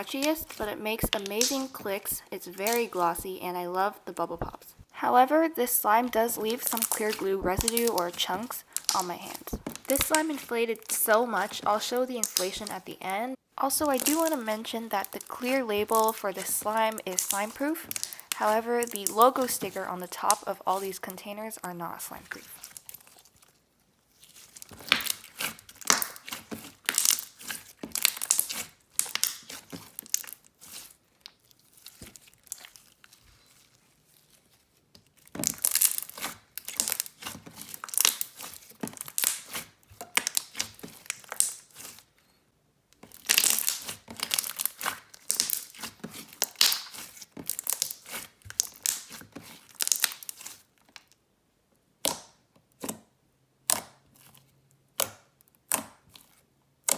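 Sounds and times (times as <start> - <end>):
slime squeezed by hand: 0.0 - 3.3, 6.4 - 12.9, 13.9 - 21.0, 22.3 - 42.1, 43.1 - 50.7.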